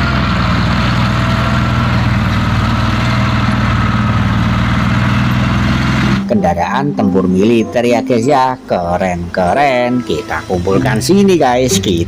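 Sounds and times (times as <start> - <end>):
tank engine idling: 0.0 - 6.3.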